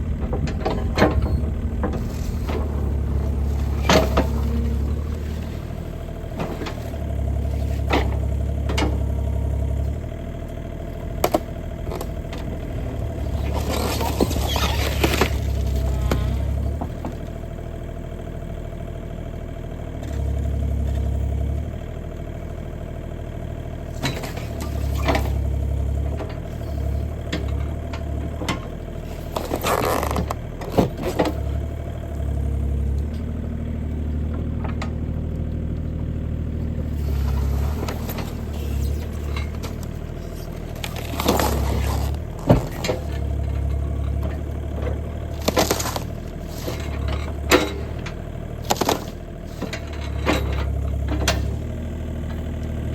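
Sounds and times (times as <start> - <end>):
excavator diesel engine running: 0.0 - 52.9
cardboard box being crushed: 40.8 - 42.8, 45.4 - 46.7, 48.6 - 49.1.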